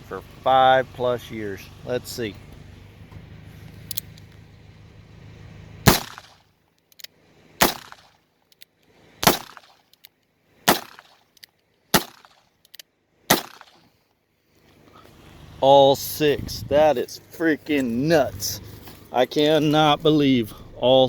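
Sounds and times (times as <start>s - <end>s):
revolver shots: 5.9s - 6.4s.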